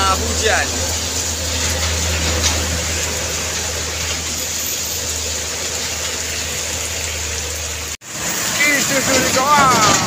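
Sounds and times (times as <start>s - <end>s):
heavy rain: 0.0s - 10.0s
truck engine humming: 0.0s - 10.0s
tyres hissing on wet road: 0.0s - 10.0s.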